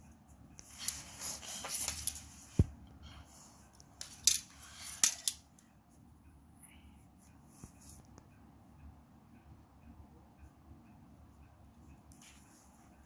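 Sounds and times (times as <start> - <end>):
drawing strokes scratching paper: 0.6 - 2.7.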